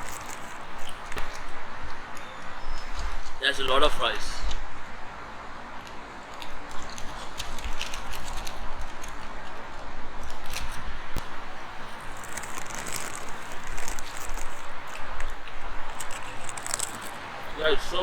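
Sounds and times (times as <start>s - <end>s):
crunchy fries being chewed: 0.0s - 3.3s, 5.8s - 17.6s.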